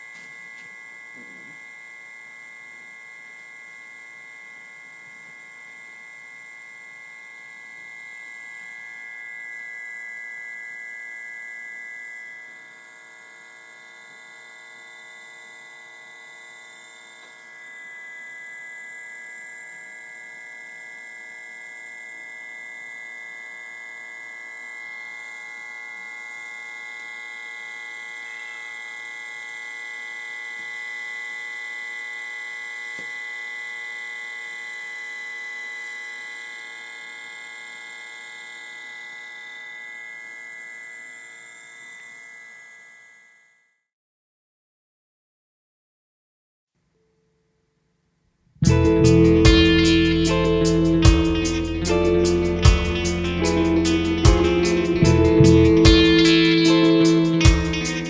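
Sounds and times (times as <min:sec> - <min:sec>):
electrical hum and high whine: 0:48.6 - 0:58.0.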